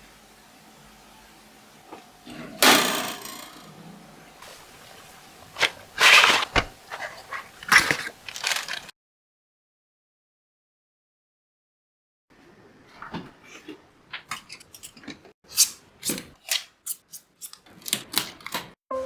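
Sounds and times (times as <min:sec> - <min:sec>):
handling rustling and clatter: 0:05.6 - 0:08.9.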